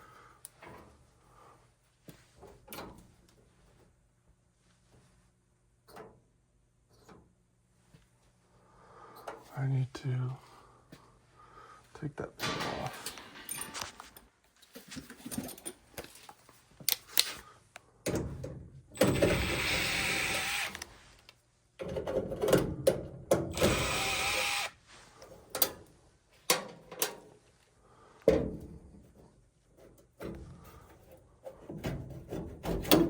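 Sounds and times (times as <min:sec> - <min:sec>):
tool handling clicks and knocks: 0:12.4 - 0:17.4, 0:26.4 - 0:27.3
power drill running: 0:19.0 - 0:20.9, 0:23.5 - 0:24.8.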